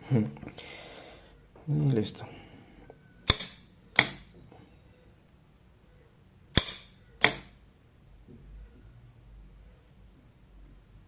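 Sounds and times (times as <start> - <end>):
solenoid bolt lock clacking: 3.3 - 4.3, 6.6 - 7.5.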